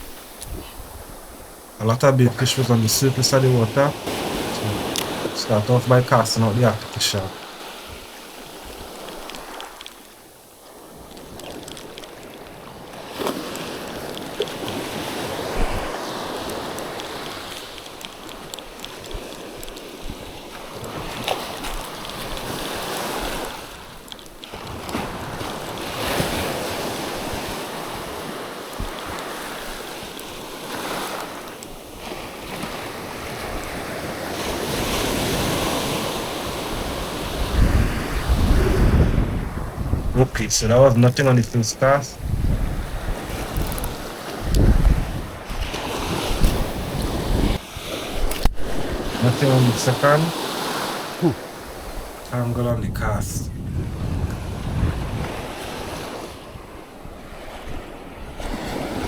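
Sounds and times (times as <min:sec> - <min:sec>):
wind buffeting microphone: 0:00.0 - 0:01.8, 0:13.5 - 0:17.6, 0:32.5 - 0:41.0, 0:42.1 - 0:49.2, 0:51.6 - 0:59.0
sea waves washing ashore: 0:00.0 - 0:59.0.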